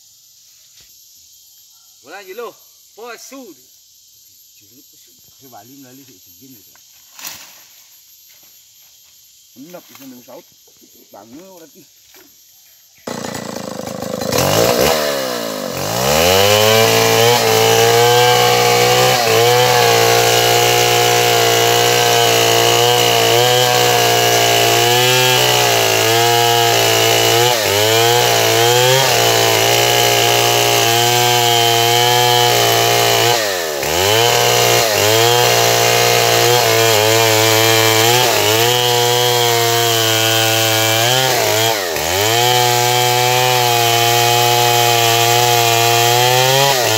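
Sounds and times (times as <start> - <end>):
chainsaw revving: 13.0 - 46.9.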